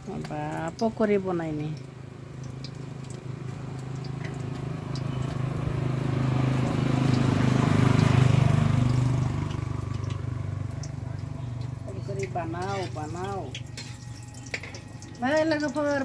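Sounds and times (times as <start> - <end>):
vehicle engine passing by: 2.1 - 14.3.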